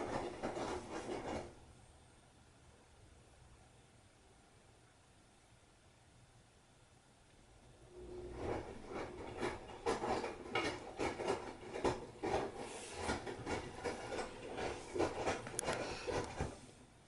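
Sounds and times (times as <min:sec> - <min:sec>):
rubbing scraping strokes: 0:00.0 - 0:01.6, 0:08.0 - 0:16.7.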